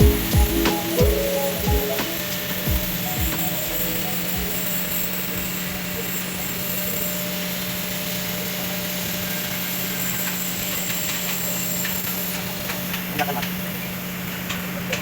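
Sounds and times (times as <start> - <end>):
welding arc hissing: 0.0 - 14.8
welding machine hum: 0.0 - 14.8.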